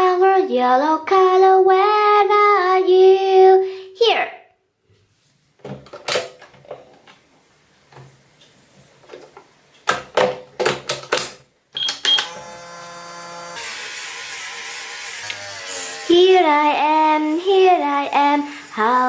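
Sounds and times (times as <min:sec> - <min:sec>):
microwave beeps: 0:11.8 - 0:12.4.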